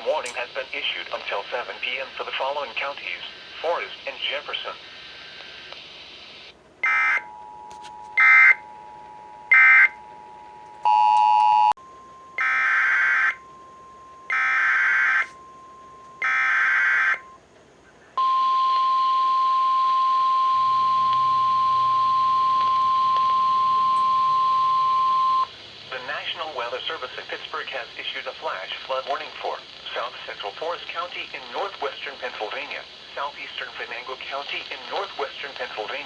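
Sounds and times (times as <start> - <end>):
chord of steady tones: 6.8 - 17.4, 18.2 - 25.6
steady high alarm tone: 6.8 - 17.4, 18.2 - 25.5.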